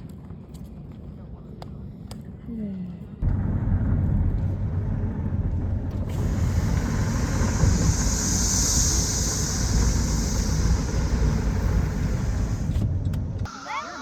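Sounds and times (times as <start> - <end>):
wind rumble on microphone: 3.2 - 13.5
cicada buzzing: 6.2 - 12.7.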